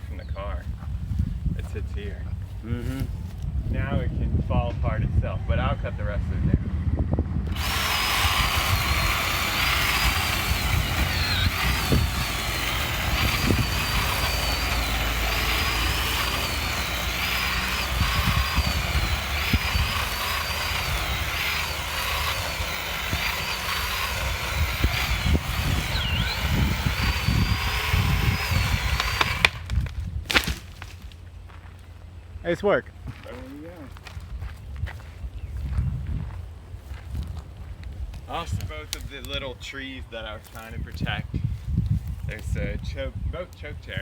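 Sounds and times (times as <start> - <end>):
chainsaw cutting wood: 7.4 - 31.1.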